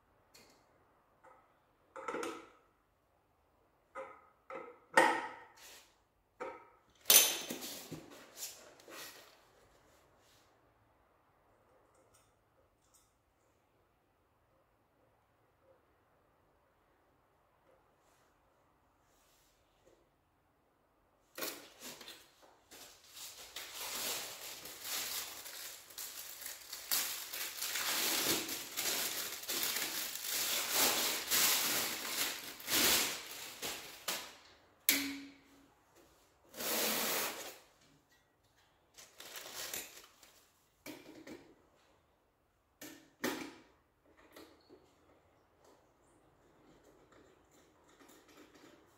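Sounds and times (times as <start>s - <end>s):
rustling and scraping handling noise: 7.4s - 10.7s, 21.4s - 34.4s.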